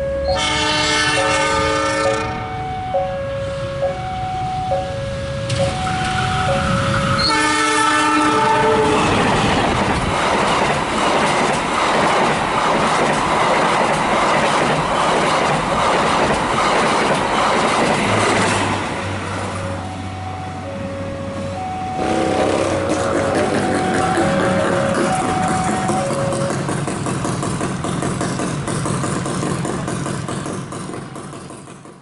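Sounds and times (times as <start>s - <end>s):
two-tone warning signal: 0.0s - 9.1s, 19.5s - 26.7s
train horn: 0.2s - 4.0s, 4.8s - 9.4s, 22.0s - 26.6s
train wheels clattering: 8.4s - 18.9s, 22.8s - 32.0s.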